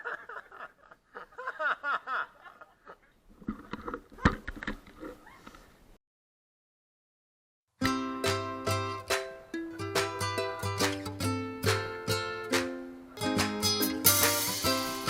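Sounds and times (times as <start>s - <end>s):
person laughing: 0.0s - 3.2s.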